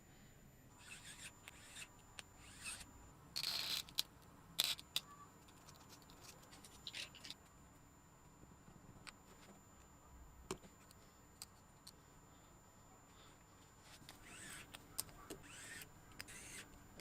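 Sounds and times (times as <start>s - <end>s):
rubbing and scraping of small parts: 0.8s - 7.4s, 13.8s - 16.7s.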